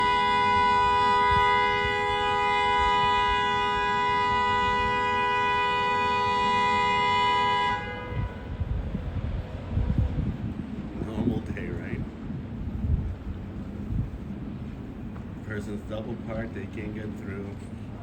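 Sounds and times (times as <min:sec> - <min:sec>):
car horn two-tone blast: 0:00.0 - 0:08.6.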